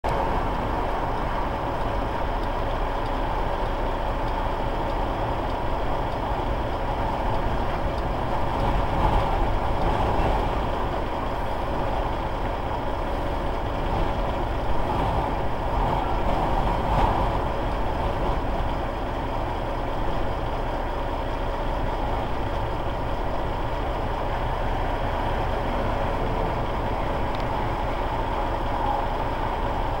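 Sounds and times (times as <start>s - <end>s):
wind buffeting a truck: 0.0s - 30.0s.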